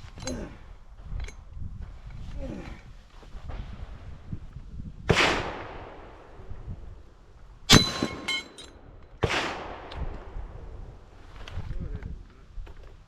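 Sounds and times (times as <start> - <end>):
metallic ring: 7.7 - 8.8
gunshots with echo: 9.2 - 9.9.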